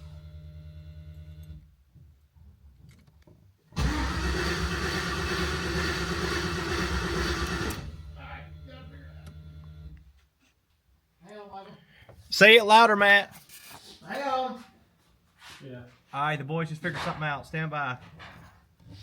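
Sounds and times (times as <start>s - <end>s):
engine cranking on starter: 3.8s - 8.2s.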